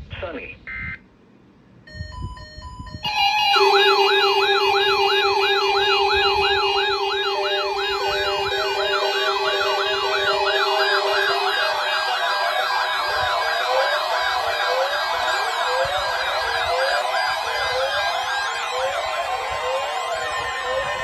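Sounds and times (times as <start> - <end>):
electronic siren yelp: 2.4 - 21.0
steady low tone: 3.5 - 13.4.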